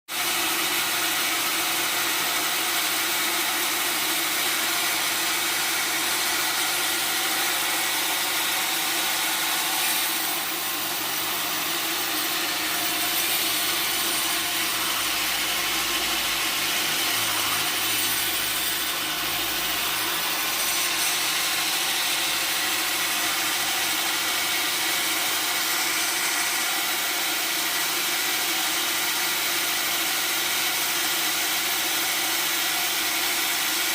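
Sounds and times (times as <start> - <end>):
saw blade cutting log: 0.1 - 33.9.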